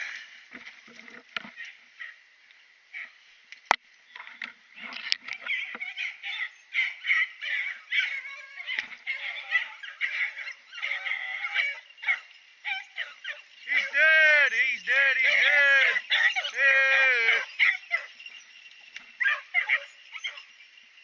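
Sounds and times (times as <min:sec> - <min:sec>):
dogs baying: 0:05.4 - 0:20.6.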